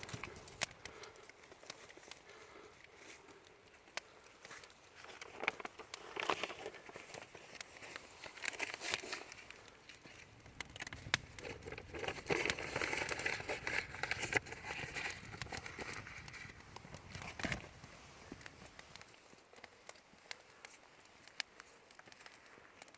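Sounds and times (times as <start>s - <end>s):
wood fire crackling and popping: 0.0s - 22.9s.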